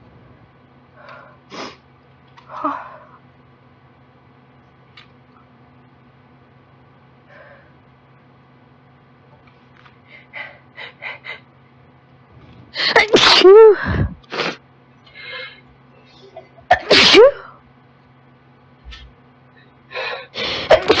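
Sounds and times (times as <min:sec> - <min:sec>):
girl sneezing: 0:12.9 - 0:14.6, 0:16.7 - 0:17.5, 0:20.6 - 0:21.0.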